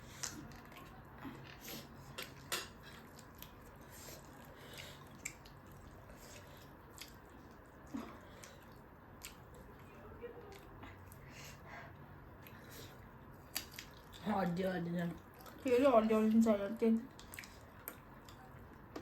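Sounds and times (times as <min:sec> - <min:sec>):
wet chewing mouth sounds: 0:00.0 - 0:11.3, 0:11.9 - 0:14.2, 0:15.2 - 0:15.6, 0:17.1 - 0:18.9
lip smacks: 0:08.4 - 0:09.5.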